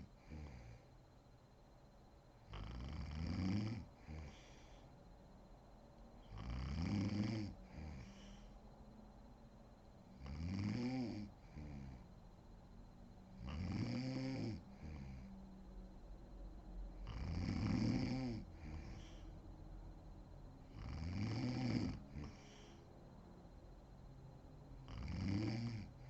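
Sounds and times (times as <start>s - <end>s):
woman snoring: 0.0s - 0.8s, 2.5s - 4.7s, 6.3s - 8.6s, 10.2s - 12.1s, 13.4s - 15.3s, 17.0s - 19.2s, 20.7s - 22.8s, 24.9s - 26.0s
soft breath out: 4.0s - 5.1s, 7.6s - 8.8s, 18.6s - 19.6s, 22.0s - 23.0s.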